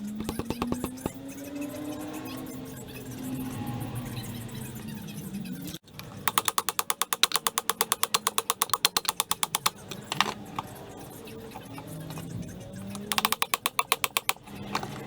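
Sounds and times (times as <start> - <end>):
rapid mechanical clicking: 0.0 - 1.2, 5.8 - 15.0.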